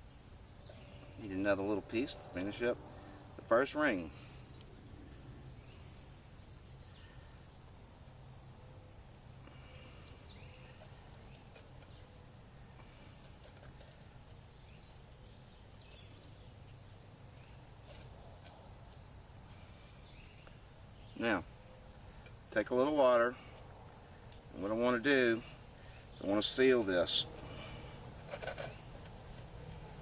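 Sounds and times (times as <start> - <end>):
insects droning: 0.0 - 30.0
faint chirps: 9.4 - 13.3.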